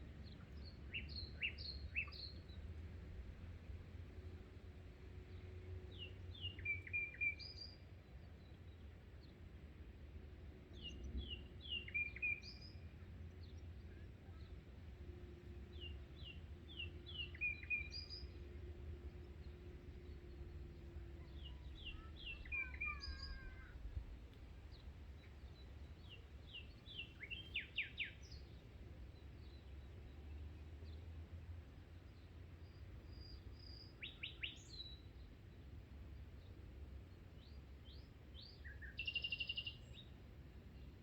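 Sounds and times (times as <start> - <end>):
songbird chirping and whistling: 21.4 - 23.6, 38.4 - 40.0.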